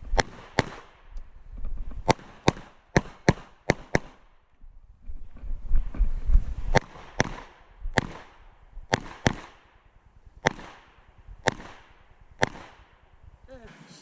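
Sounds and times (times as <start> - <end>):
pistol shots with echo: 0.1 - 1.0, 2.0 - 4.2, 6.7 - 9.8, 10.4 - 13.0.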